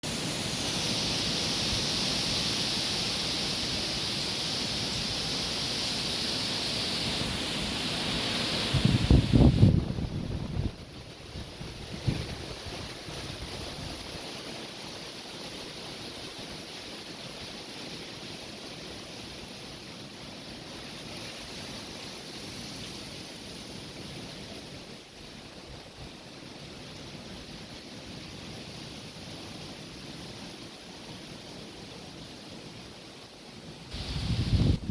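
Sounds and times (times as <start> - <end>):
strong wind blowing: 8.6 - 14.0, 33.9 - 34.9
strong wind rushing: 8.7 - 10.8, 33.9 - 34.9.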